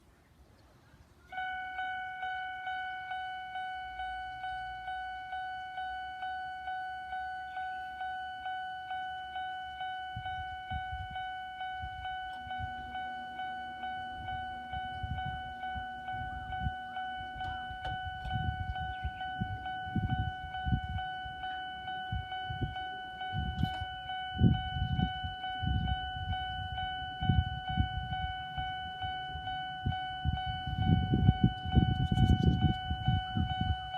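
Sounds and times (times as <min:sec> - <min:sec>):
level crossing warning bell: 0:01.3 - 0:33.9
approaching train rumble: 0:09.2 - 0:33.9.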